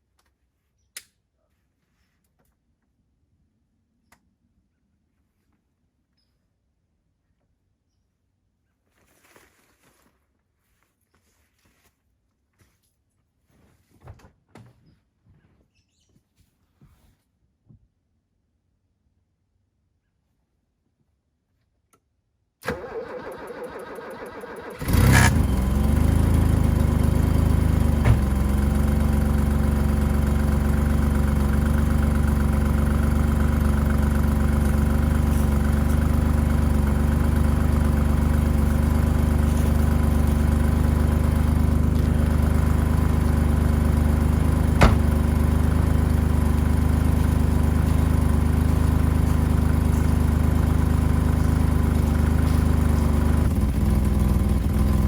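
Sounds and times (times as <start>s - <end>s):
engine starter cranking: 22.6s - 28.8s, 44.0s - 55.0s
car engine idling: 24.7s - 55.0s.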